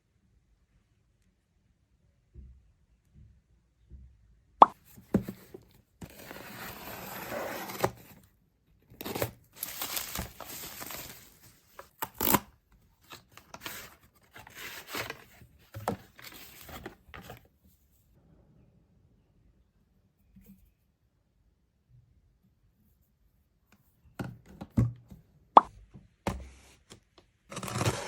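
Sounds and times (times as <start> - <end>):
packaging rustling and crinkling: 9.0 - 12.4, 13.0 - 17.5.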